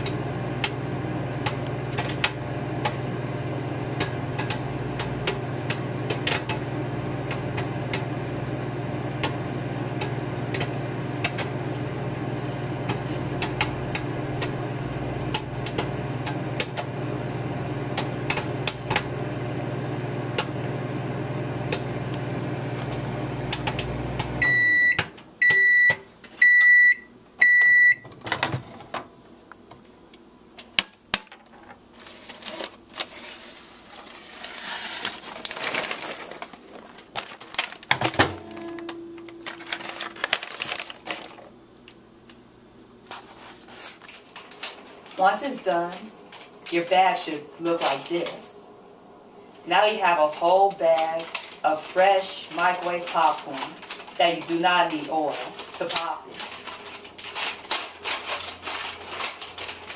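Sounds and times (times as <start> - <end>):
popcorn popping: 0.0 - 3.1, 3.9 - 8.2, 9.0 - 12.0, 12.6 - 26.7, 29.6 - 33.0, 35.1 - 42.4, 50.0 - 59.9
microwave oven humming: 0.0 - 31.0, 35.3 - 59.9
microwave beeps: 23.2 - 28.1, 38.3 - 40.3.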